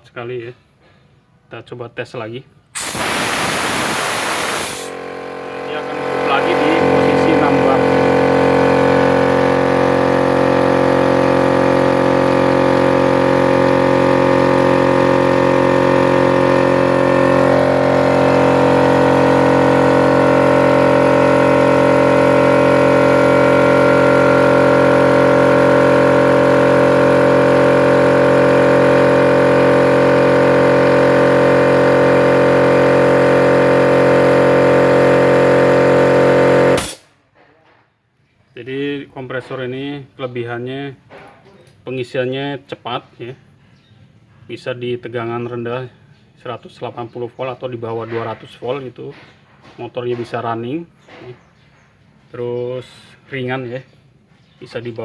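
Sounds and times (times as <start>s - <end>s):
air compressor humming: 2.8s - 37.1s.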